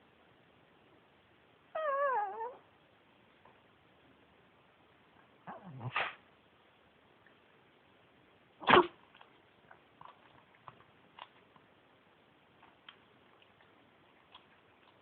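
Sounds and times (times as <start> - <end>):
dog whining call: 1.8 - 2.6.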